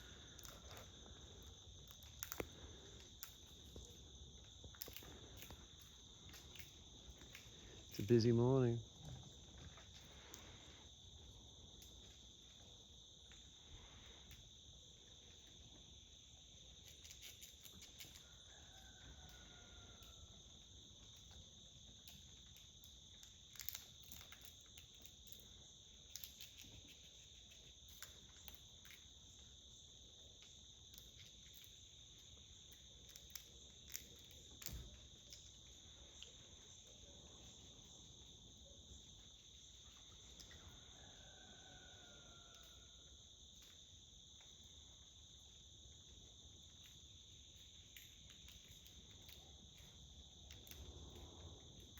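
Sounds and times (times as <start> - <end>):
faint clicks and ticks: 0.0 - 8.3
insects trilling: 0.0 - 51.9.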